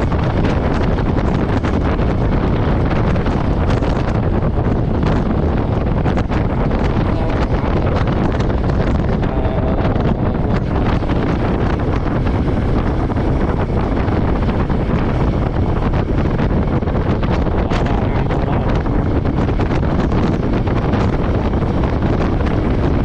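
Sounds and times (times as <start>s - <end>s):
motorcycle engine running: 0.0s - 23.0s
wind rush on microphone: 0.0s - 23.0s.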